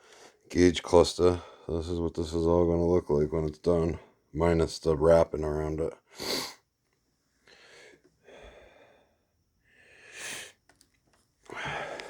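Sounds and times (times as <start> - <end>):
breathing close to microphone: 11.5 - 12.0.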